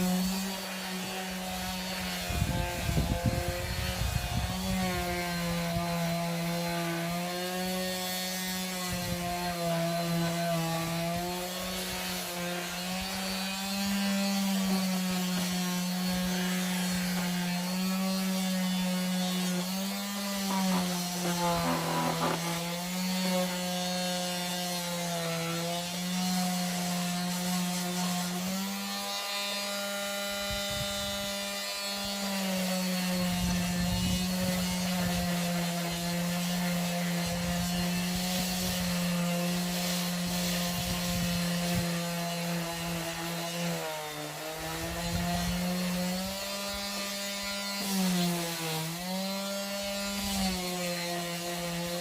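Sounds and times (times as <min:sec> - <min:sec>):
electric sander on wood: 0:00.0 - 0:52.0.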